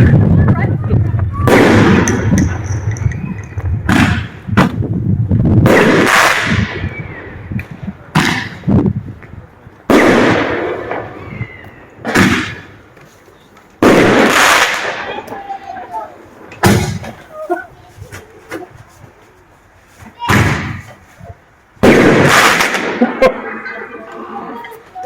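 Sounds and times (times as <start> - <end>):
firework shells bursting: 1.5 - 4.8, 13.8 - 15.5, 21.8 - 23.2.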